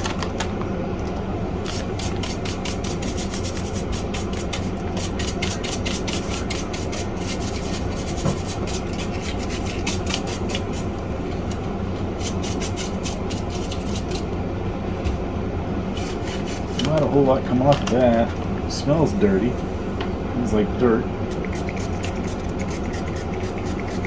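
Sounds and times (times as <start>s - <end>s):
brush bristles scrubbing: 16.0s - 17.3s, 21.5s - 24.0s.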